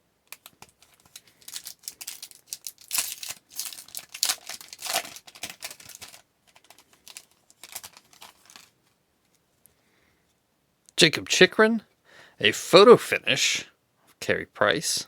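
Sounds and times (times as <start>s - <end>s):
cards rustling and clicking: 0.3s - 8.8s
wrapper crinkling and tearing: 0.3s - 8.8s.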